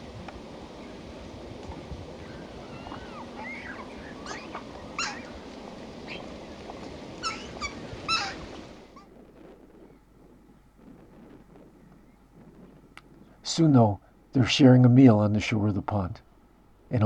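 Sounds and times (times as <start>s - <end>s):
young bird begging calls: 0.0s - 9.0s
background hiss: 0.0s - 17.0s.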